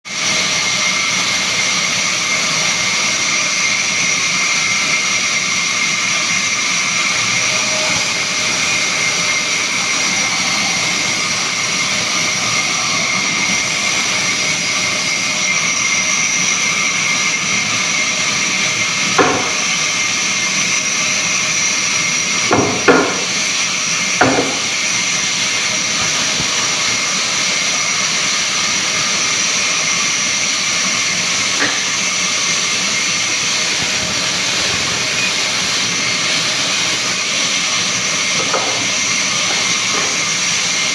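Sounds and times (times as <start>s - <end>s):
woodworking machine hissing and whining: 0.1s - 40.9s
sharp knocks: 19.2s - 19.7s, 22.5s - 23.4s, 24.2s - 24.7s.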